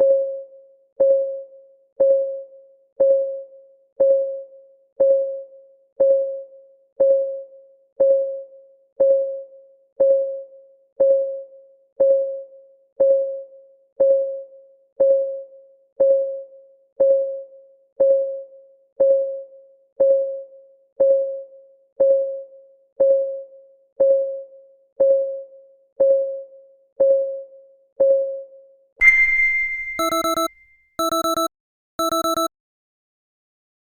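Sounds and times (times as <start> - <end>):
clock ticking: 30.0 - 32.5.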